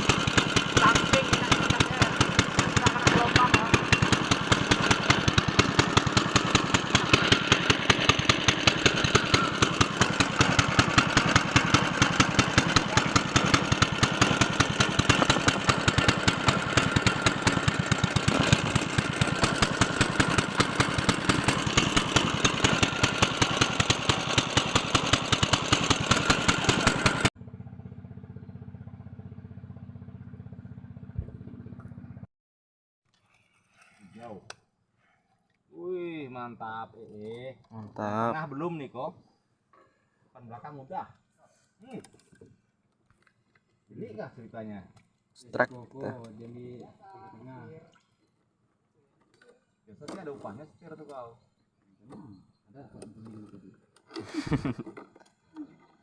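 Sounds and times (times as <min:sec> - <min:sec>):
small engine running: 0:00.0 - 0:32.3, 0:53.2 - 0:55.9.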